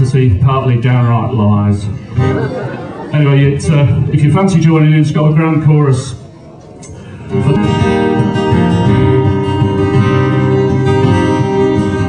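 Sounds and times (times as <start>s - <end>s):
folk band playing: 6.9s - 12.0s.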